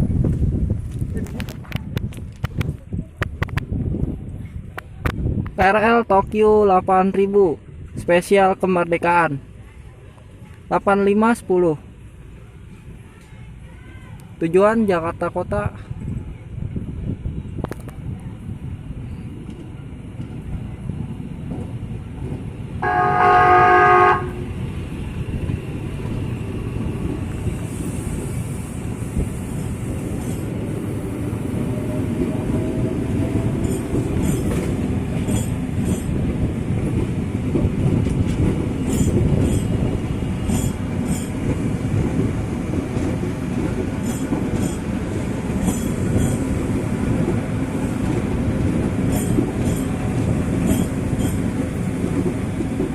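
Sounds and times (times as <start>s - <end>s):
train rumbling past: 0.0s - 52.9s
train horn blast: 22.8s - 24.6s
wheels clicking over rail joints: 32.1s - 52.9s.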